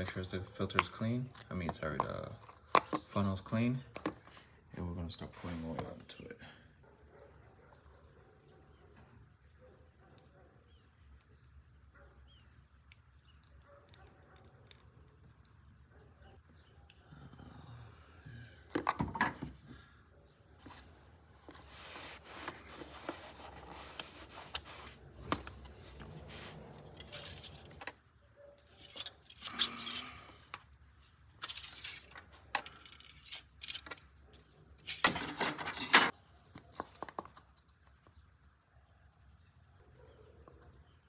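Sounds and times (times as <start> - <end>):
rustling scrapes: 5.3 - 5.8, 20.6 - 28.0, 28.6 - 30.6, 31.4 - 36.2.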